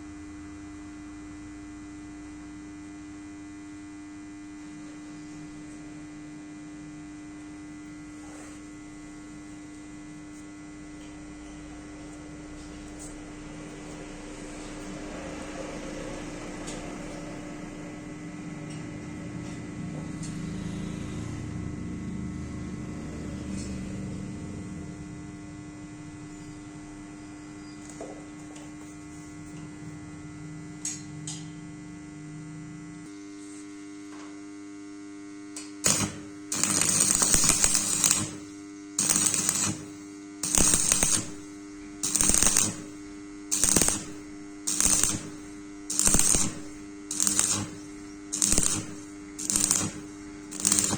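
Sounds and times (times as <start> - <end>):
electrical hum: 3.6 - 50.9
crackling welding arc bursts: 35.6 - 50.9.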